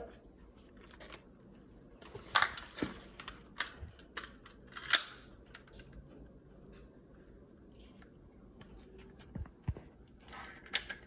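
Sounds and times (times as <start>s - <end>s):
plastic clicks and clatters: 2.1s - 6.0s.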